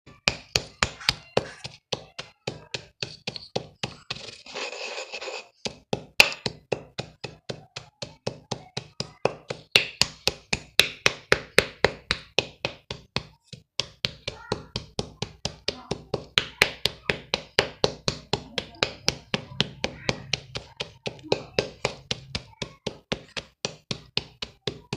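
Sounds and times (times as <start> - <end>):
grainy chalk crumble: 3.0 - 5.8.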